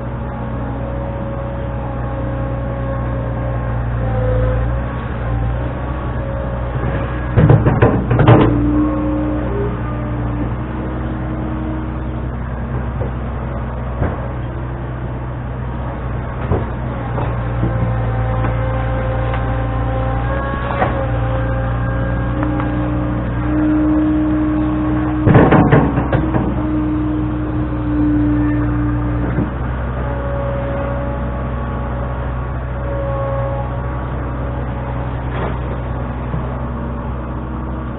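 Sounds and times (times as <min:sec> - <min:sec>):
loader engine running: 0:00.0 - 0:37.9
loud clanking: 0:25.1 - 0:26.8.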